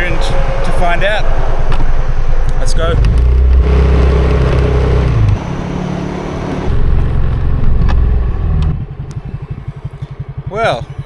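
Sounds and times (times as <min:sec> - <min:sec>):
low rumble on microphone: 0:02.5 - 0:11.0
scooter engine running: 0:02.8 - 0:11.0.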